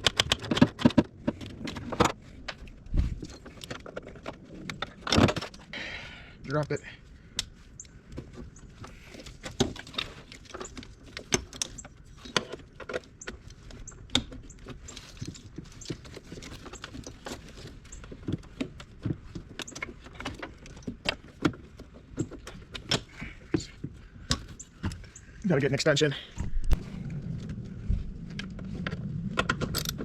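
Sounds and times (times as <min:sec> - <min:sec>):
metal hand tools clinking: 0:29.8 - 0:30.0.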